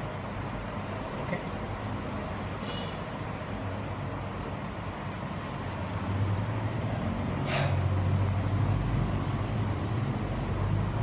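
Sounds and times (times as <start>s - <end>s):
heavy vehicle engine rumble: 3.5s - 11.0s
short sharp hiss: 7.4s - 7.9s.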